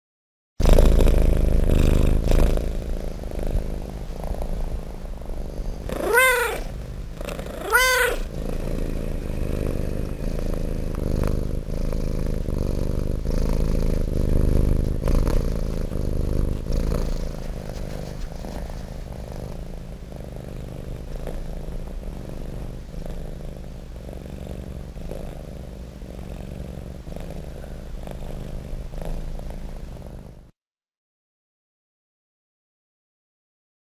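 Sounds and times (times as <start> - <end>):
cat purring: 0.6 - 30.6
cat meowing: 5.9 - 6.7, 7.5 - 8.3.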